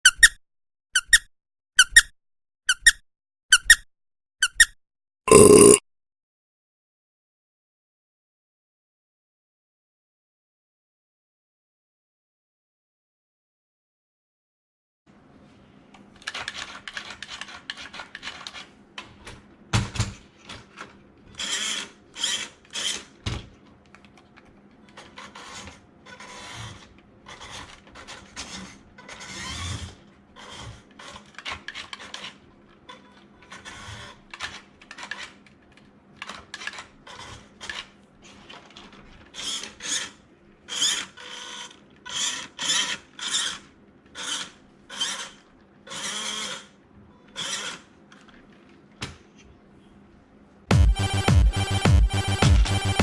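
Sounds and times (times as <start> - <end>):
small parts scraping and clicking: 30.4 - 46.7.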